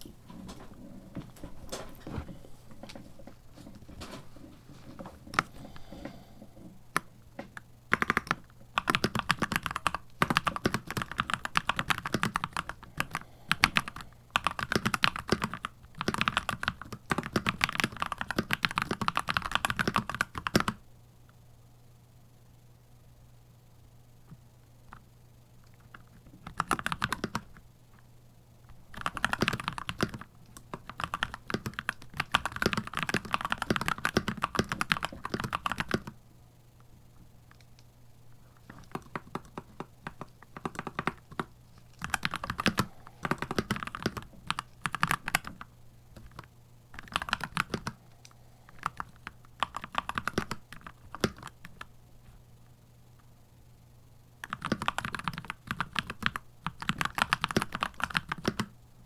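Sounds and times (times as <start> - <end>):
faint low hum: 0.0 - 59.0
mechanical keyboard typing: 6.9 - 20.8, 25.7 - 27.6, 28.7 - 36.2, 38.6 - 48.0, 48.7 - 51.9, 54.4 - 58.8.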